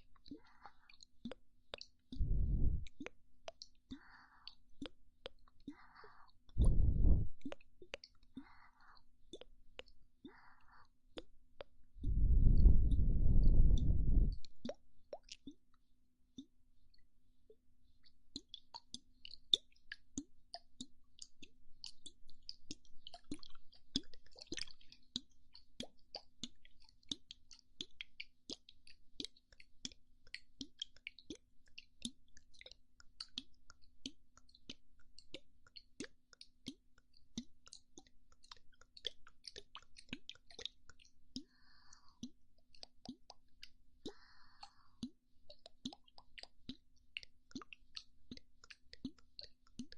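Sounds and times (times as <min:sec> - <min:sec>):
wet mouth clicks and pops: 0:00.2 - 0:15.7, 0:18.3 - 0:49.9
faint steady hum: 0:02.2 - 0:03.0, 0:06.6 - 0:07.4, 0:12.0 - 0:14.6.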